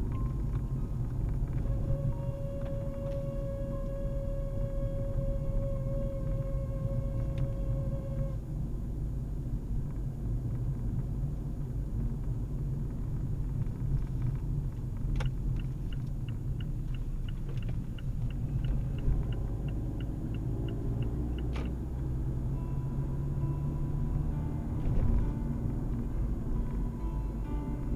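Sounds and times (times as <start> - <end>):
car interior rumble: 0.0 - 27.9
steady mid-pitched tone: 22.4 - 27.9.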